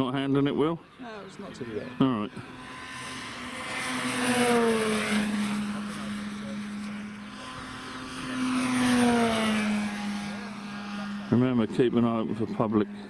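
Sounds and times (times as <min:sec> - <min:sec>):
model plane propeller droning: 0:00.0 - 0:13.0.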